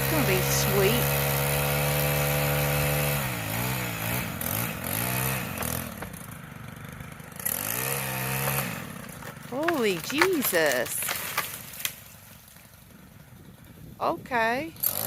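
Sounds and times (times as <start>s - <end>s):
small-engine saw running: 0.0s - 11.7s, 14.8s - 15.0s.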